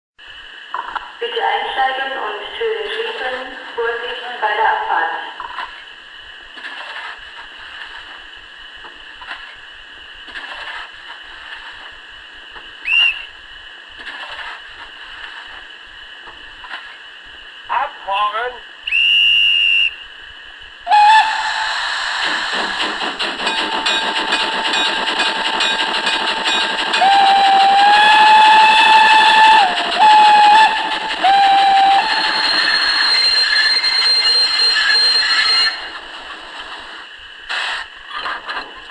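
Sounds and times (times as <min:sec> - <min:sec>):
steam locomotive hissing: 0:18.9 - 0:38.4.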